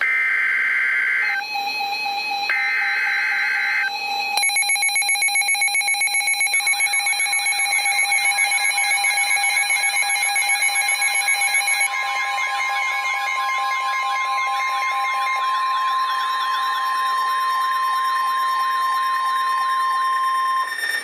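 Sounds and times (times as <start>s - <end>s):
rapid pulsing alert beep: 4.4s - 11.9s.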